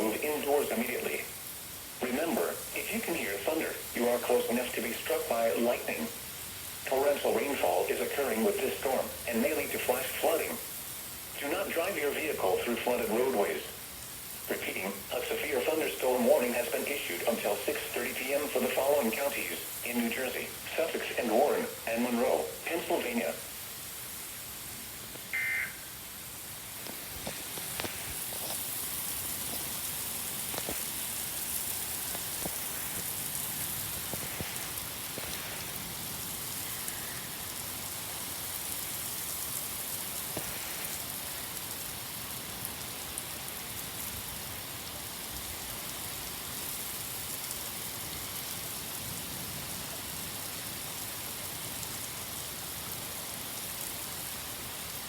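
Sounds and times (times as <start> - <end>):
steady rain falling: 0.0 - 55.0
short electronic tone: 25.4 - 25.9.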